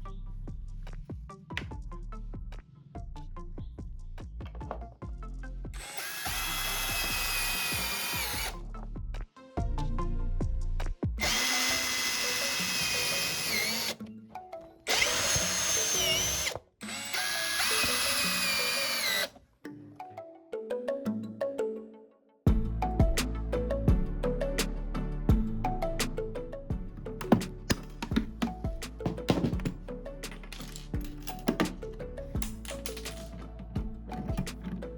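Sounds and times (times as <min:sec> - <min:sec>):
electric drill whining: 0:05.8 - 0:08.6, 0:11.2 - 0:14.0, 0:14.9 - 0:19.3.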